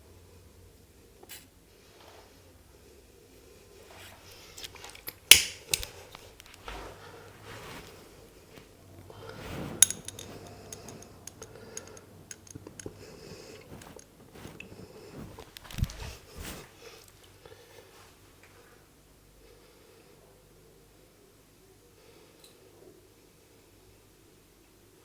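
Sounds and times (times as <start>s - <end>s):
hands rubbing softly: 6.6s - 17.0s
light clicks and taps: 9.3s - 14.8s.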